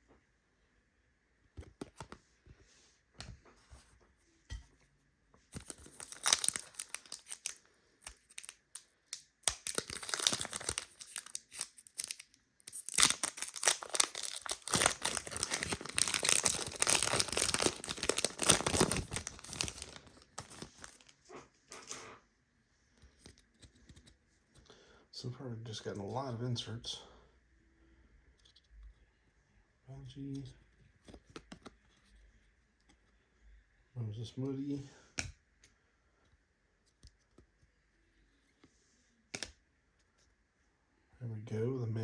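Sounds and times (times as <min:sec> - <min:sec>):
foil wrapper rustling: 0:05.6 - 0:21.1
foil wrapper tearing: 0:05.6 - 0:21.1.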